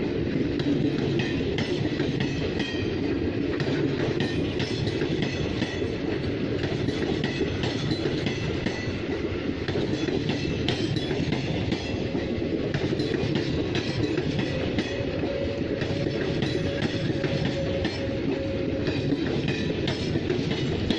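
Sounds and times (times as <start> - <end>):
train wheels rumbling and clicking: 0.0 - 20.9
thin steady wheel whine: 12.0 - 20.9.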